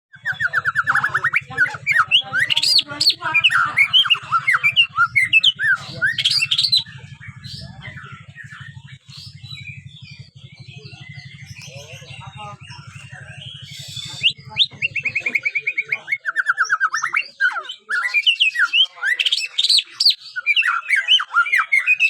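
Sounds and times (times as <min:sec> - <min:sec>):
steady low hum: 0:00.1 - 0:16.2
bird singing whistles: 0:00.1 - 0:22.0
soft bird twittering: 0:00.1 - 0:22.0.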